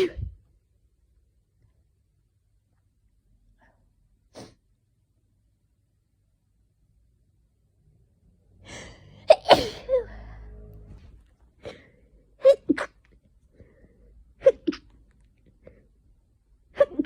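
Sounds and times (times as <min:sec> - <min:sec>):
person sneezing: 0:09.3 - 0:10.1.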